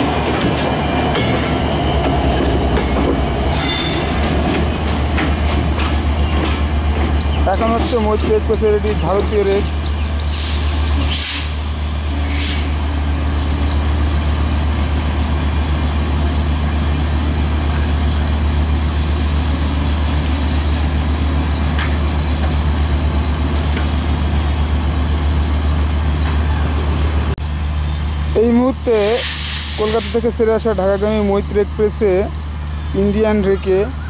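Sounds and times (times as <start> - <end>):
diesel locomotive idling: 0.0 - 34.0
air hiss: 10.3 - 12.8, 29.0 - 31.4.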